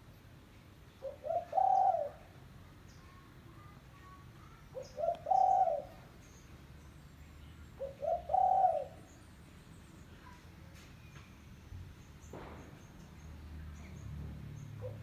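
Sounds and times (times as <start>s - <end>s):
dove cooing: 1.0s - 2.3s, 4.7s - 6.1s, 7.8s - 9.1s, 14.8s - 15.0s.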